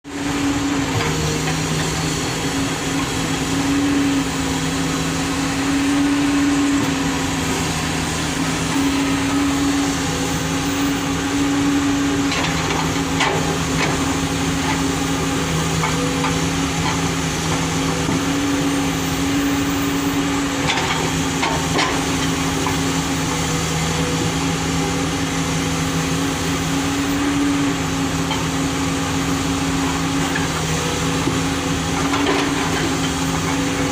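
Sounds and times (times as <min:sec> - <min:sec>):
excavator diesel engine running: 0:00.0 - 0:33.9.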